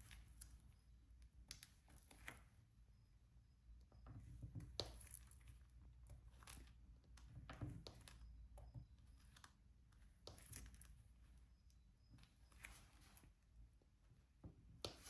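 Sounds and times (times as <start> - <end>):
faint clicks and taps: 6.0 - 10.9.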